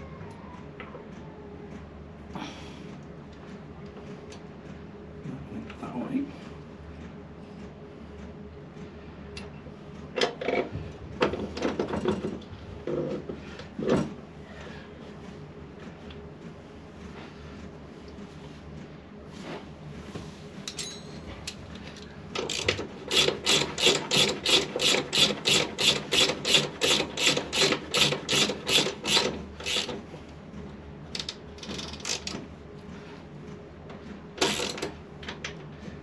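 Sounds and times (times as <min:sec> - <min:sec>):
ratchet spanner clicking: 0:22.4 - 0:29.9, 0:31.1 - 0:32.4, 0:34.4 - 0:34.9.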